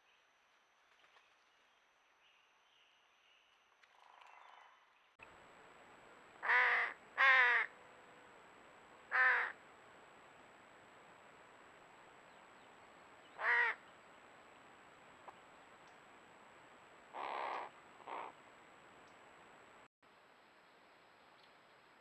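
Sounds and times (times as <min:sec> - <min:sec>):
faint outdoor background: 0:00.0 - 0:22.0
bird giving harsh caw calls: 0:06.4 - 0:07.7, 0:09.1 - 0:09.6, 0:13.4 - 0:13.8, 0:17.2 - 0:18.3.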